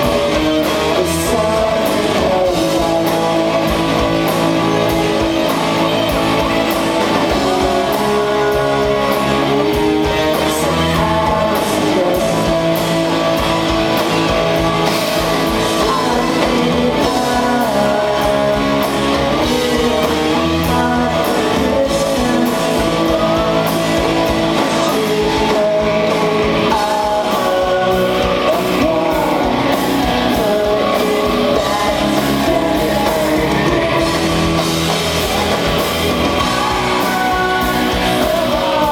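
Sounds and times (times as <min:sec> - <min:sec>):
drums: 0:00.0 - 0:38.9
electric guitars: 0:00.0 - 0:38.9
person singing: 0:00.0 - 0:38.9.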